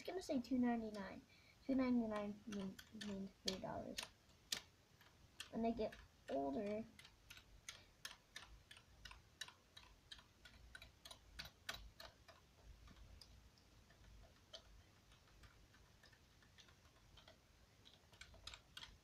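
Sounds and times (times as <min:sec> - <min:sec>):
typewriter keys clicking: 0:02.0 - 0:04.7, 0:05.4 - 0:13.2.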